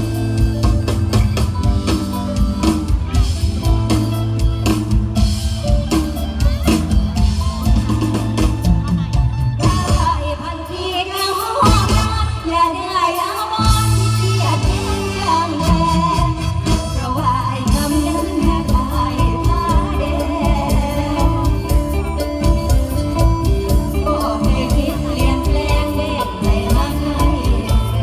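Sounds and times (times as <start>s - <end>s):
drum beat and bass: 0.0s - 28.0s
person singing: 7.9s - 28.0s.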